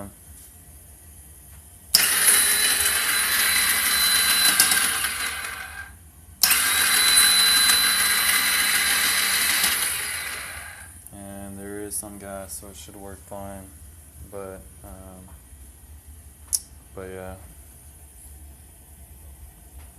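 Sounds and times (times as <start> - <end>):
electric starter cranking engine: 1.9 - 10.9.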